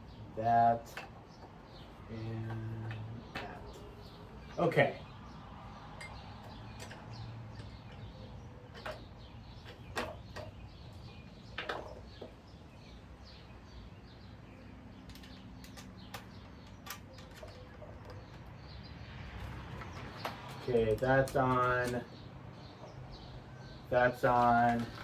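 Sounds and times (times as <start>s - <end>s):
light clicks and taps of metal: 6.0s - 10.6s, 14.9s - 18.6s, 19.4s - 22.1s.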